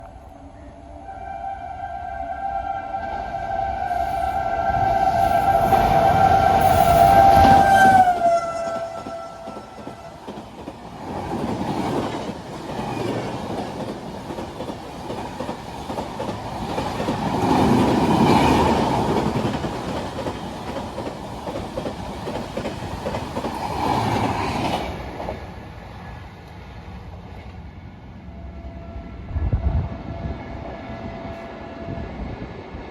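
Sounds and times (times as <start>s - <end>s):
train wheels clattering over rail joints: 8.7s - 25.5s.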